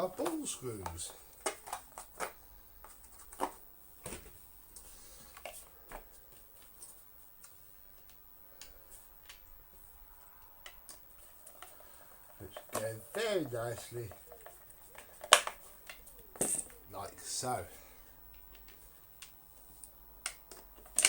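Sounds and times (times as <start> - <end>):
plastic parts and screws clicking: 0.2 - 3.6, 18.2 - 21.0.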